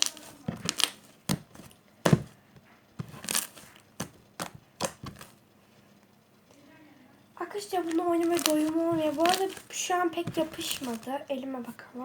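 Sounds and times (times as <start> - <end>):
slime popping and clicking: 0.0 - 2.3, 3.0 - 5.3.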